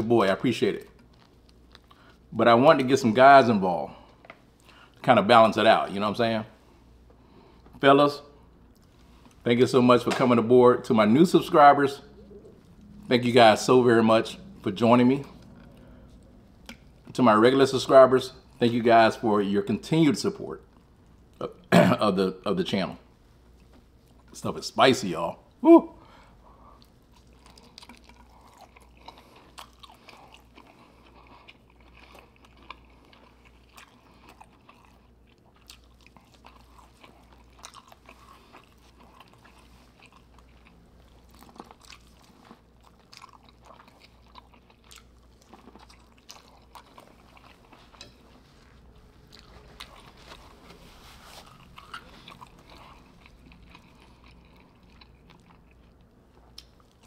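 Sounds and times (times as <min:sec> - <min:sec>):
person chewing and crunching: 0:00.8 - 0:02.3, 0:11.3 - 0:19.2, 0:26.7 - 0:57.0.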